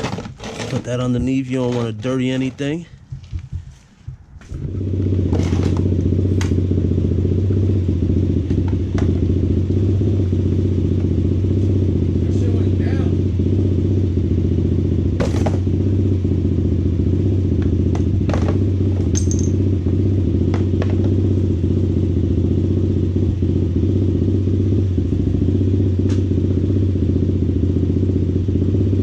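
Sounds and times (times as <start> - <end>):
engine drone: 0.0 - 29.0
metallic tool clinks: 19.1 - 19.6.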